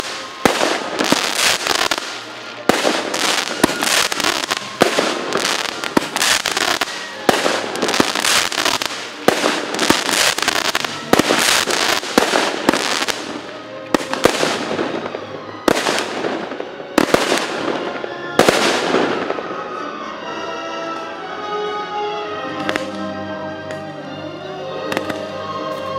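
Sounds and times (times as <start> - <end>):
fireworks bangs and crackling: 0.0 - 19.6, 24.9 - 25.3.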